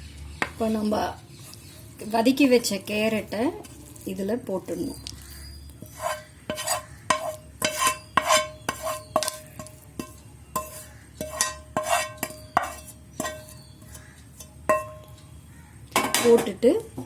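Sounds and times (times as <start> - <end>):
metal spoon knocking on pot: 6.5 - 15.2, 15.9 - 16.6.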